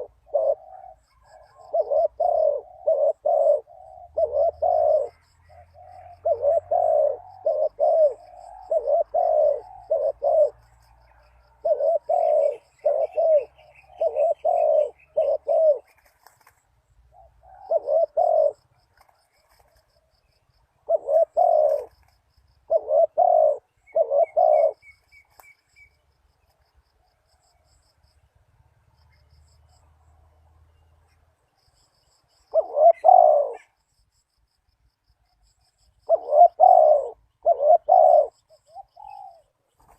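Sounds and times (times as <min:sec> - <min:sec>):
dove cooing: 0:00.0 - 0:20.1, 0:20.8 - 0:25.5, 0:32.4 - 0:33.8, 0:36.0 - 0:39.9
small bird chirping: 0:00.0 - 0:28.3, 0:28.9 - 0:39.9.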